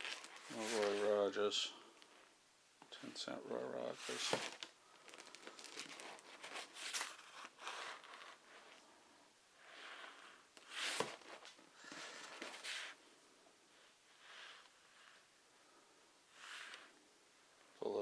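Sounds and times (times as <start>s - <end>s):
paper rustling: 0.0s - 1.2s, 4.0s - 8.8s, 10.6s - 13.0s.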